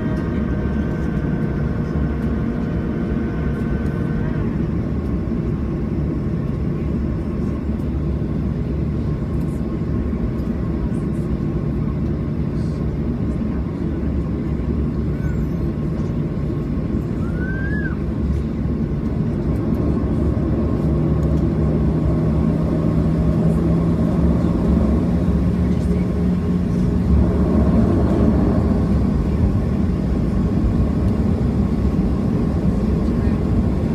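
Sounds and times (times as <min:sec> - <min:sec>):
jet engine rumble in cabin: 0:00.0 - 0:33.9
low hum: 0:00.0 - 0:33.9.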